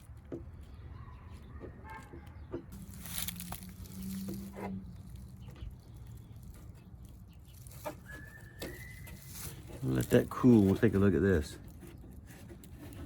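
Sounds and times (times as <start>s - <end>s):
plastic welding iron scraping: 2.7s - 13.0s.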